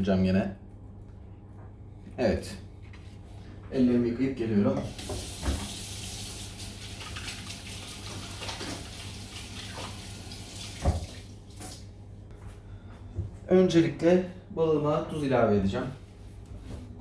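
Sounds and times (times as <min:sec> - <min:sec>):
water running from a tap: 0:04.8 - 0:11.9
hands washing under water: 0:04.9 - 0:11.9.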